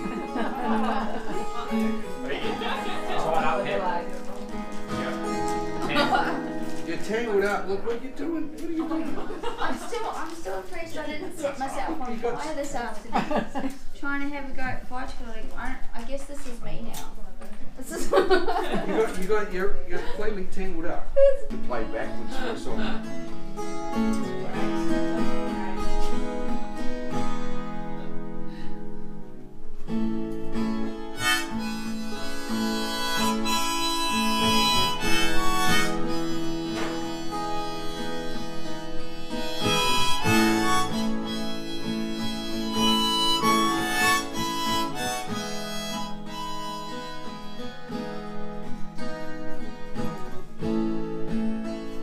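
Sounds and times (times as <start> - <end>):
acoustic guitar strumming: 0.0 - 10.2, 21.4 - 52.0
harmonica long notes: 30.6 - 49.4.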